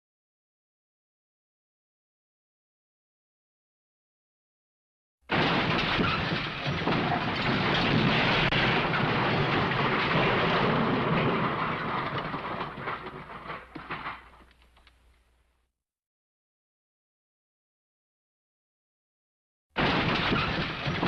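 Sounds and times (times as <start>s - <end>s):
crackling crash rumble: 5.3s - 15.5s, 19.8s - 21.0s.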